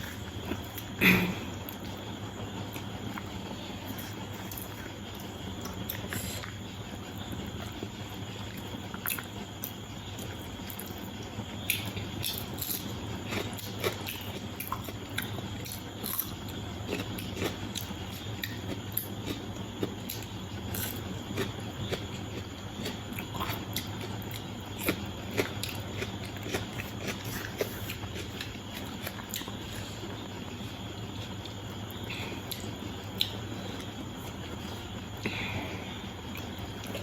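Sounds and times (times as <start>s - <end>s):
low background hum: 0.0s - 37.0s
chewing and biting: 11.7s - 29.9s.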